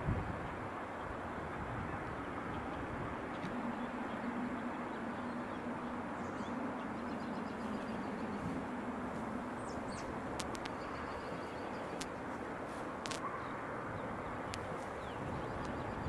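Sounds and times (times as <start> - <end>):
distant traffic rumble: 0.0 - 16.0
faint bird chirps: 9.5 - 12.2.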